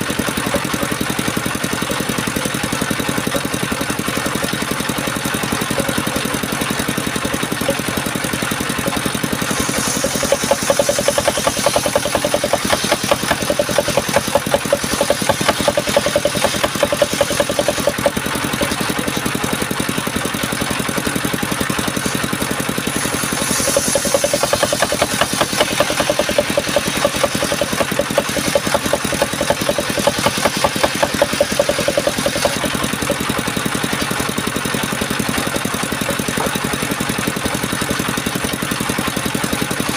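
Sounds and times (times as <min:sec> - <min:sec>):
sawmill engine running: 0:00.0 - 0:39.9
saw blade cutting timber: 0:05.5 - 0:19.4, 0:21.8 - 0:38.0.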